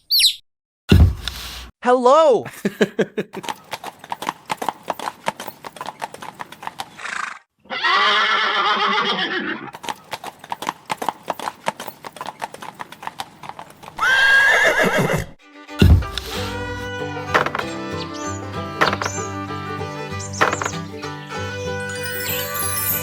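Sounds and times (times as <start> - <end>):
horse hooves clip-clopping: 3.7 - 7.0, 9.8 - 14.0
horse whinnying: 7.0 - 9.8, 14.0 - 15.4.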